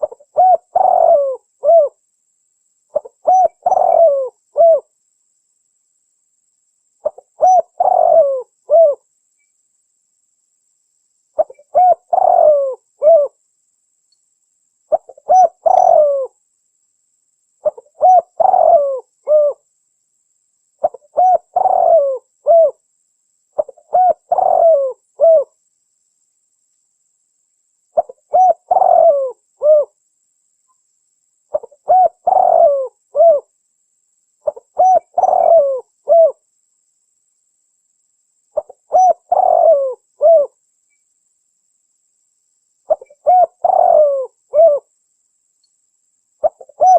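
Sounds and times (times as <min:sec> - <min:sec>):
dove cooing: 0:00.0 - 0:02.0, 0:02.9 - 0:04.9, 0:07.0 - 0:09.0, 0:11.4 - 0:13.4, 0:14.9 - 0:16.4, 0:17.6 - 0:19.6, 0:20.8 - 0:22.8, 0:23.6 - 0:25.5, 0:28.0 - 0:30.0, 0:31.5 - 0:33.5, 0:34.4 - 0:36.4, 0:38.6 - 0:40.6, 0:42.9 - 0:44.9, 0:46.4 - 0:46.9.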